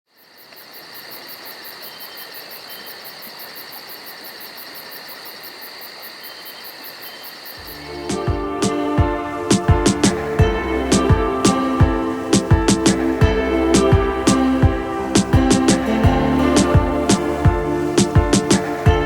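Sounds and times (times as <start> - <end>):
insects chirping: 0.1 - 10.5
background hiss: 0.2 - 19.0
background music with bass and drums: 7.8 - 19.0.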